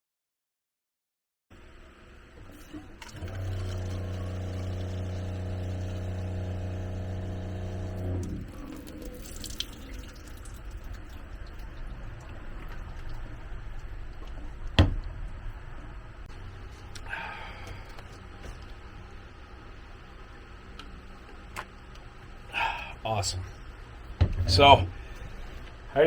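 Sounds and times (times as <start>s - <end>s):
water pump humming: 1.6s - 25.7s
water trickling in sink: 2.6s - 14.5s.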